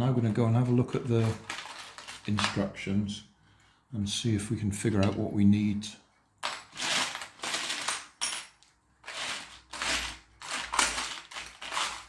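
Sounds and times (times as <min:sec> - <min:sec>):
metal parts rattling and clinking: 0:00.2 - 0:02.7, 0:06.4 - 0:12.0.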